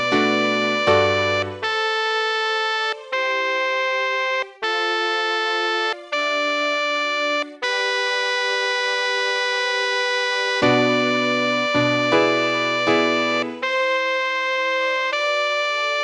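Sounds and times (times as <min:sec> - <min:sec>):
synthesizer playing held notes: 0:00.0 - 0:01.9, 0:09.7 - 0:15.1.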